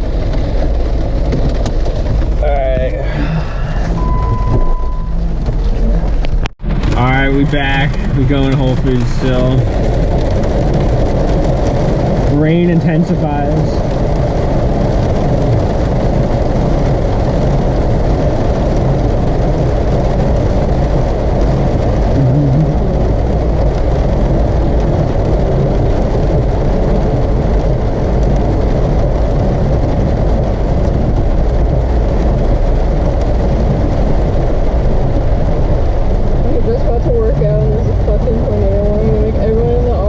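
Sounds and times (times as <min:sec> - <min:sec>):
car driving in heavy rain: 0:00.0 - 0:40.0.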